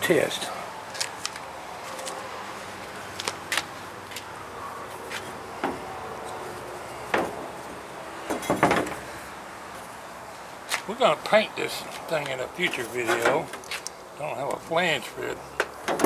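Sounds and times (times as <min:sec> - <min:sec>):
light handling knocks and clicks: 0:15.6 - 0:16.0.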